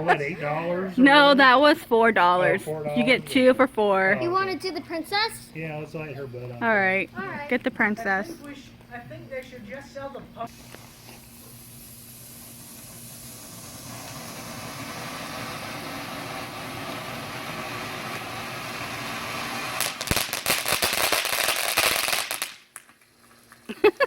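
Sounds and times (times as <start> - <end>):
firework fountain hissing: 10.0 - 24.0
firework crackling pops: 10.4 - 24.0.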